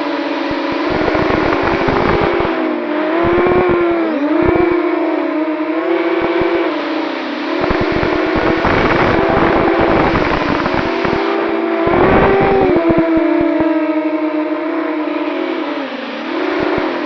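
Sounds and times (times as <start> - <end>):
quadcopter motors whining: 0.0 - 14.1
wind buffeting microphone: 0.5 - 2.6, 3.2 - 4.8, 7.6 - 13.7.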